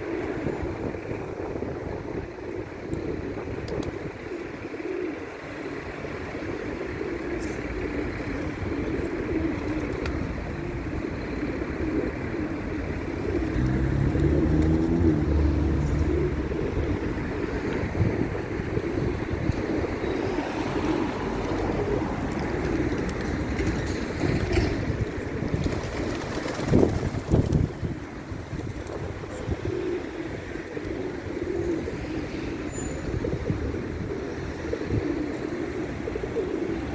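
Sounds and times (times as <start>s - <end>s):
pigeons cooing: 0.0s - 36.9s
low rumbling engine: 4.0s - 25.4s.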